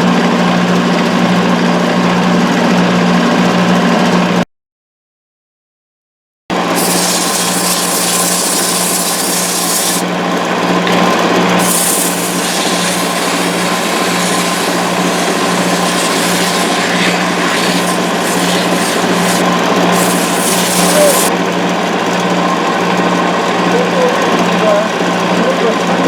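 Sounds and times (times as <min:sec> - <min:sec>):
lathe motor hum: 0:06.5 - 0:21.3
tool scraping spinning wood: 0:06.5 - 0:21.3.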